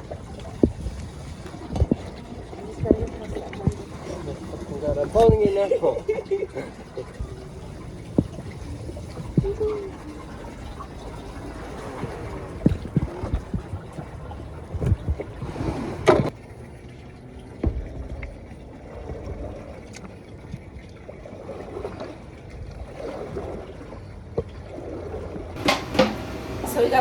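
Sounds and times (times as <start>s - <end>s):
water splashing and lapping: 0.0s - 27.0s
knocks on dinghy: 5.0s - 5.7s, 25.6s - 27.0s.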